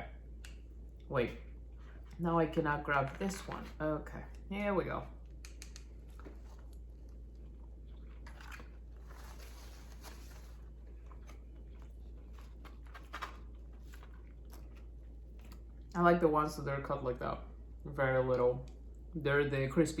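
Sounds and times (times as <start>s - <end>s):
person chewing crispy food: 6.0s - 16.0s.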